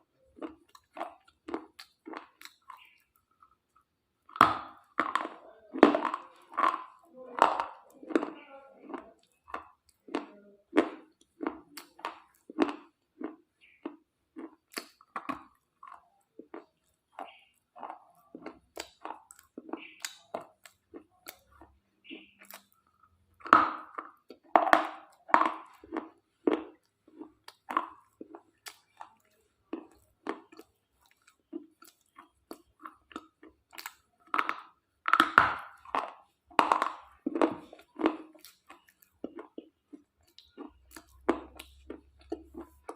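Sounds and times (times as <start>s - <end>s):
slate pieces crunching: 23.4s - 42.9s.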